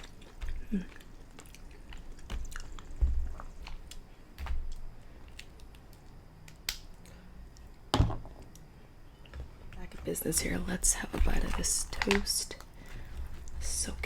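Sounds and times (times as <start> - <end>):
wet chewing noises: 0.0 - 6.2, 11.1 - 13.8.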